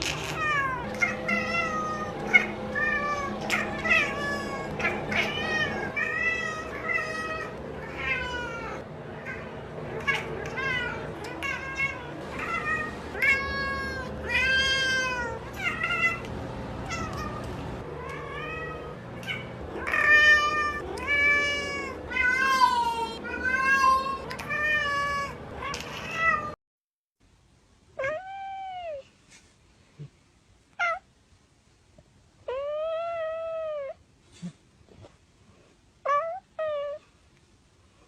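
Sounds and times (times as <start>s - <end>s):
cat meowing: 0.0s - 26.6s, 28.0s - 29.0s, 30.7s - 31.1s, 36.0s - 37.1s.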